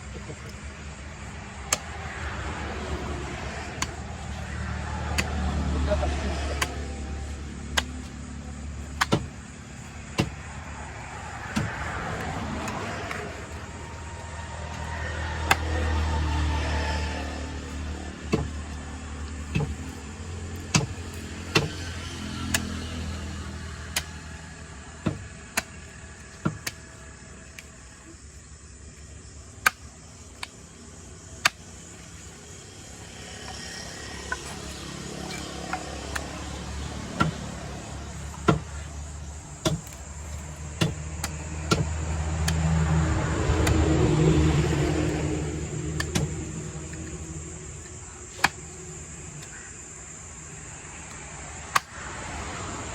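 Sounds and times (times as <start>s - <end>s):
sharp knocks: 9.0s - 9.4s, 19.4s - 20.0s, 20.7s - 21.9s, 37.1s - 37.6s, 38.3s - 38.9s, 39.6s - 40.0s, 40.8s - 42.6s, 46.0s - 46.5s.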